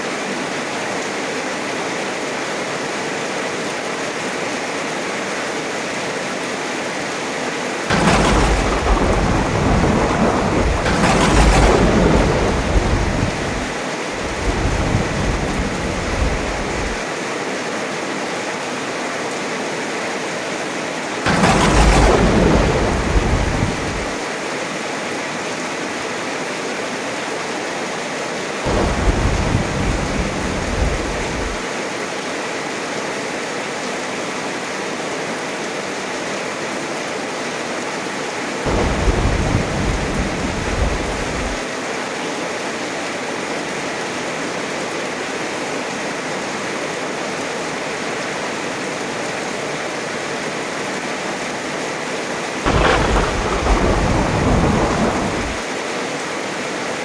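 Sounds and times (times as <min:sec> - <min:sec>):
heavy rain falling: 0:00.0 - 0:32.3, 0:37.3 - 0:56.0
thunder rolling: 0:07.9 - 0:17.0, 0:21.3 - 0:24.2, 0:28.7 - 0:31.6, 0:38.7 - 0:41.6, 0:52.7 - 0:55.7.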